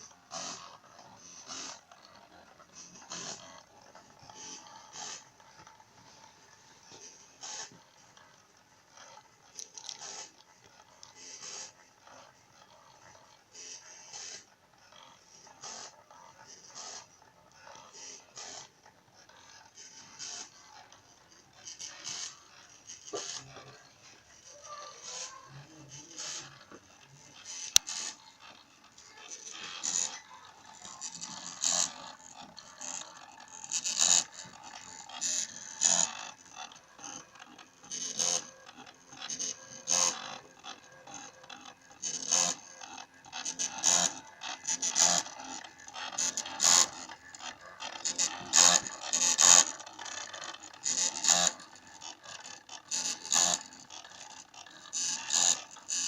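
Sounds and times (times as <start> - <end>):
stepper motors buzzing: 21.6 - 56.0.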